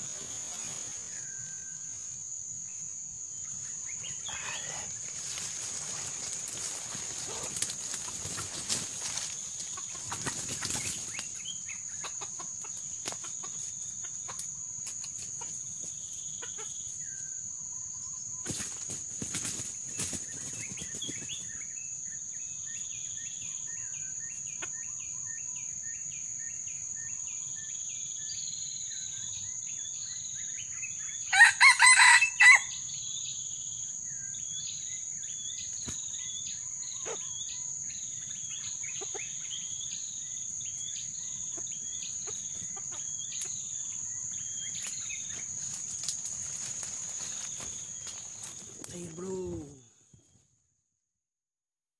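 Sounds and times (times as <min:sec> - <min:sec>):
high insect whine: 0:00.0 - 0:49.9
rooster crowing: 0:31.3 - 0:32.8.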